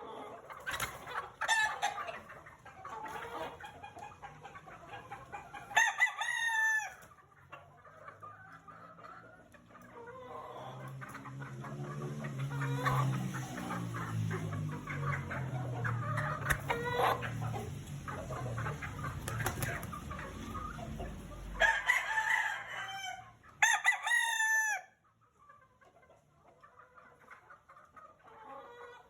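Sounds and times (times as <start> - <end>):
chickens clucking: 0.0 - 29.0
rooster crowing: 5.7 - 7.0, 21.6 - 25.0.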